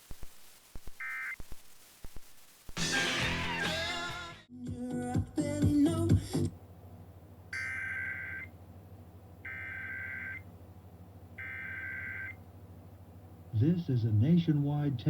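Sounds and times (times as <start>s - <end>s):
buzzy two-tone digital data bursts: 0.0s - 3.8s
broadcast music: 2.8s - 6.5s.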